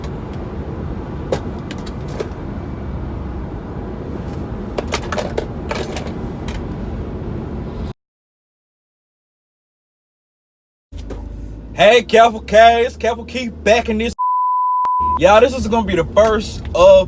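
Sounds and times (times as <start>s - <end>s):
car road and engine rumble: 0.0s - 8.0s, 10.9s - 14.2s, 15.0s - 17.0s.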